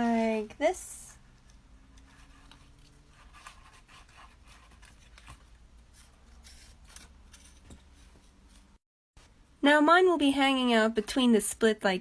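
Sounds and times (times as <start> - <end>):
paper rustling and scraping: 2.1 - 8.8.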